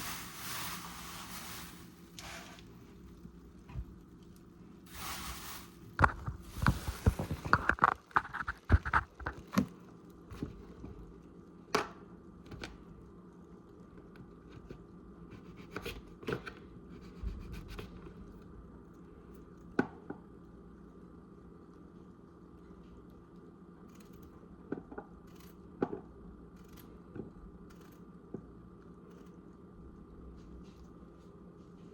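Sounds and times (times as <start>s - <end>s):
faint steady hum: 0.0s - 31.9s.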